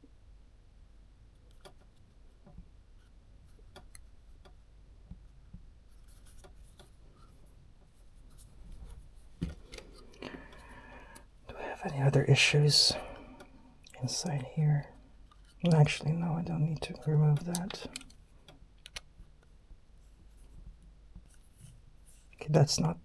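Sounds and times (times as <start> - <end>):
small parts clicking and scraping: 17.3 - 19.1.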